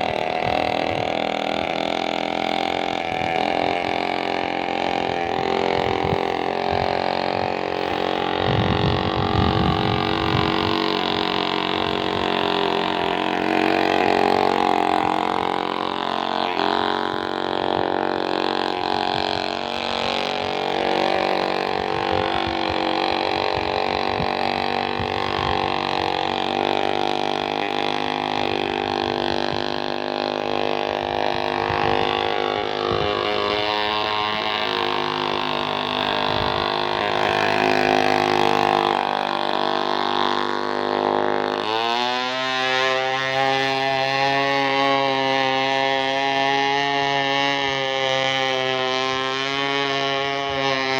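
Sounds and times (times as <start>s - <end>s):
small engine running: 0.0s - 50.9s.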